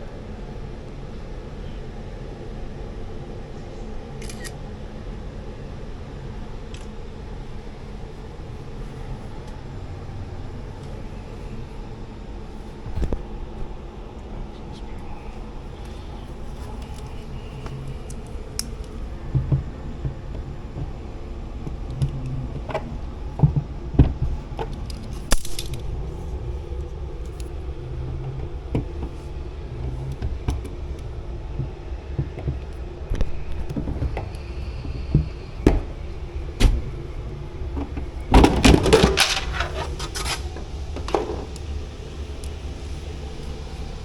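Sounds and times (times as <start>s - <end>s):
steady low hum: 0.0s - 44.0s
rattling clatter: 37.8s - 41.6s.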